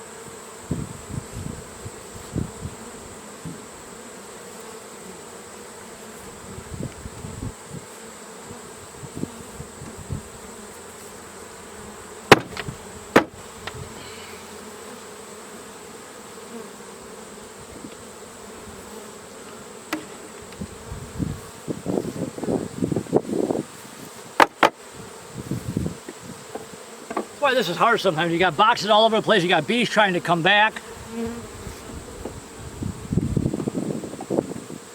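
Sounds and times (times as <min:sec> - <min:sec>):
honeybees buzzing: 0:00.0 - 0:34.9
handling thumps: 0:12.3 - 0:13.8, 0:24.4 - 0:24.8, 0:26.0 - 0:27.4
sharp knocks: 0:12.3 - 0:13.8, 0:24.4 - 0:24.8, 0:26.5 - 0:27.3.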